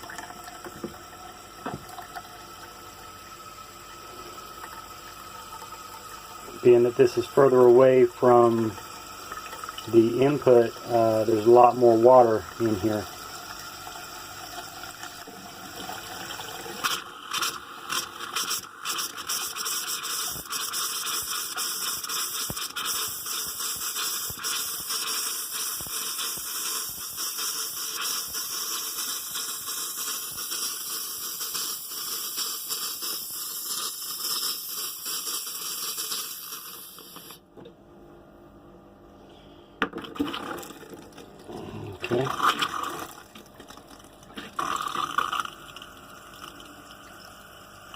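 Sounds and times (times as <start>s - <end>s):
compressed air sputtering water: 15.2s - 37.4s, 40.2s - 46.8s.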